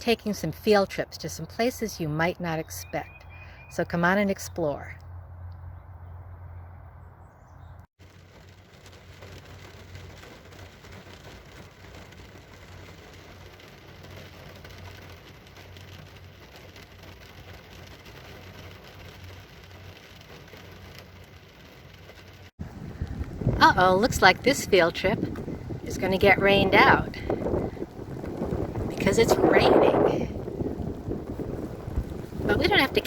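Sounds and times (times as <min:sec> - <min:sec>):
steady rain falling: 0:08.0 - 0:33.0.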